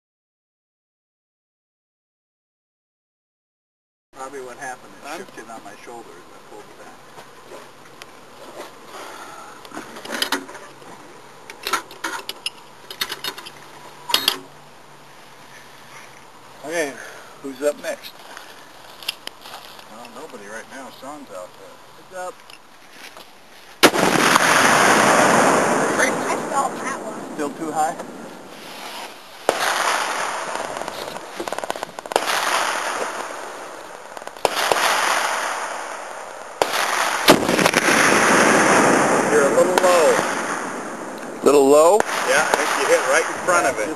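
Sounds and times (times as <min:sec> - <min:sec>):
rifle shots echoing: 0:23.8 - 0:26.7, 0:29.5 - 0:41.1, 0:42.0 - 0:43.9.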